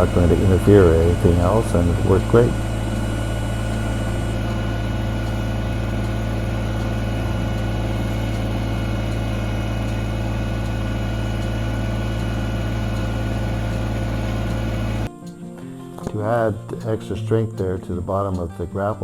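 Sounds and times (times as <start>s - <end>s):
tractor diesel engine running: 0.0s - 15.1s.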